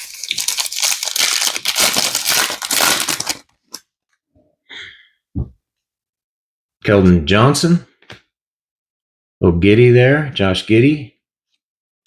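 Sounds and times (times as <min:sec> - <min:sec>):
foil wrapper crinkling: 0:00.0 - 0:03.8.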